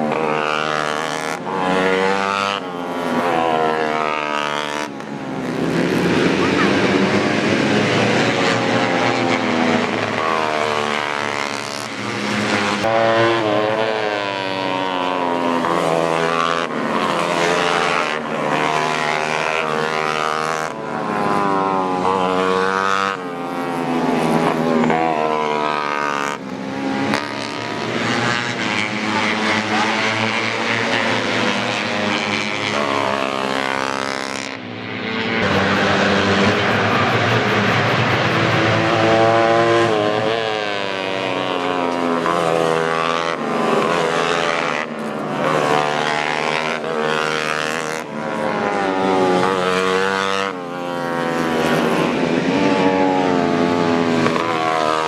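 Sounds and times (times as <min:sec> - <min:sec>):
motorcycles revving hard: 0:35.4 - 0:38.8.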